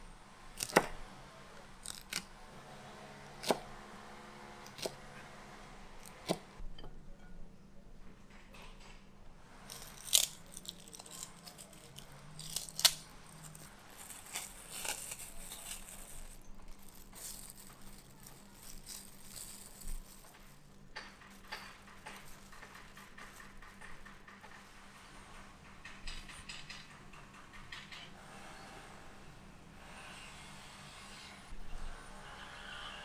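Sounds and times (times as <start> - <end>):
tearing and crunching: 0.6 - 0.9, 1.8 - 2.3, 4.6 - 5.0, 9.7 - 23.8.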